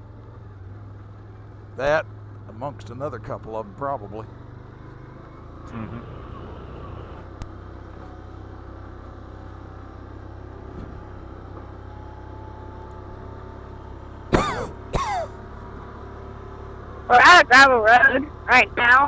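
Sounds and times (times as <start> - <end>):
engine running low hum: 1.9 - 7.5, 13.0 - 19.0.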